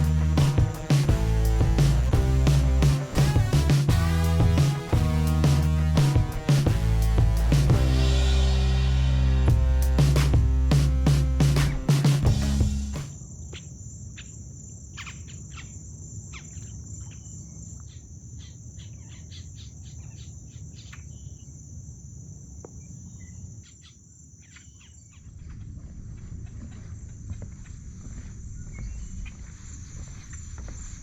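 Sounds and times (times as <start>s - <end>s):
low rumble: 0.0s - 13.0s
insects trilling: 13.1s - 31.0s.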